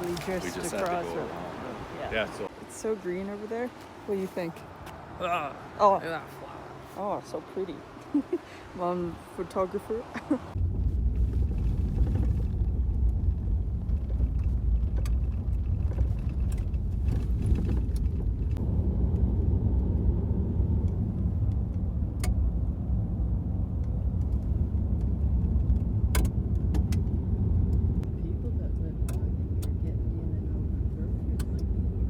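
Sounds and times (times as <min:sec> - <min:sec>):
car engine and road rumble: 0:00.0 - 0:32.0.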